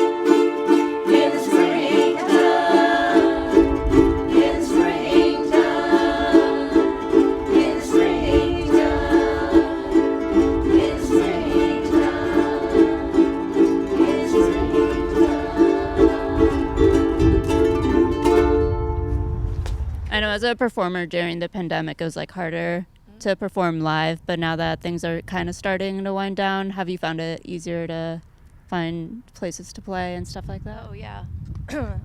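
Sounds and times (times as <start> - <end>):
ukuleles strumming: 0.0 - 19.8.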